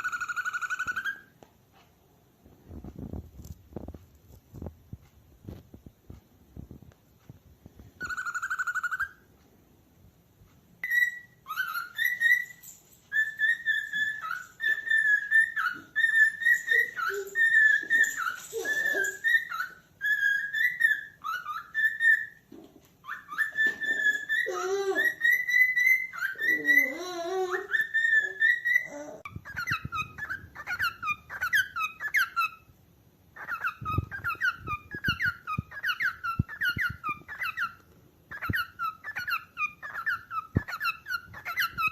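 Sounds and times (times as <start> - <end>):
cockatiel whistling: 0.0 - 1.3, 8.0 - 9.3, 10.8 - 22.4, 23.0 - 27.0, 27.7 - 32.7, 33.4 - 41.9
cockatiel chirping: 0.0 - 1.4, 8.0 - 9.4, 10.8 - 27.0, 27.6 - 32.7, 33.3 - 41.9.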